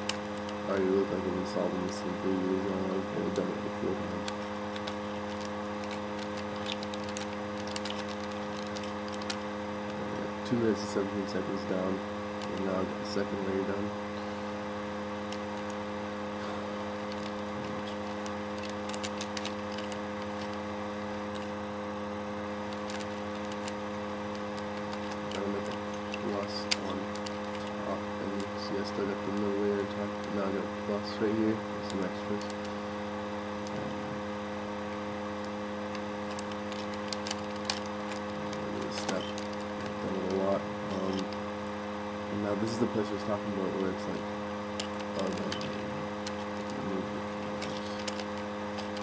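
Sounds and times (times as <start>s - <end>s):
steady electrical hum: 0.0s - 49.0s
puzzle cube clicking as turned: 4.2s - 9.4s, 18.1s - 20.6s, 22.7s - 27.7s, 35.9s - 39.6s, 47.6s - 49.0s
puzzle cube layers clicking: 47.5s - 49.0s.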